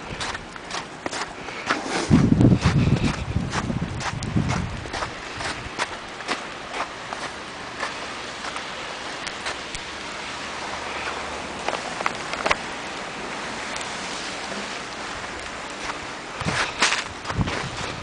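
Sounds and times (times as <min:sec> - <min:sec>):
blizzard wind hissing: 0:01.3 - 0:05.8.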